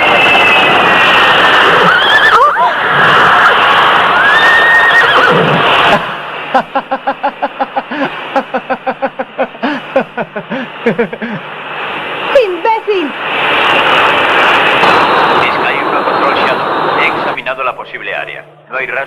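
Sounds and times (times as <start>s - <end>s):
steady rushing noise: 0.0s - 19.0s
horse whinnying: 1.6s - 3.5s, 4.2s - 6.1s.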